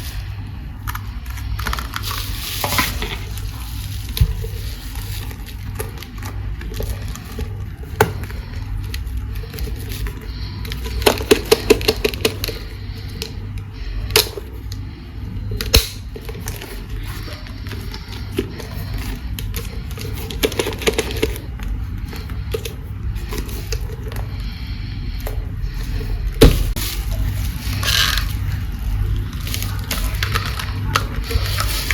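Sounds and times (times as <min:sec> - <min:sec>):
plastic toys clicking and tapping: 0:10.7 - 0:12.6.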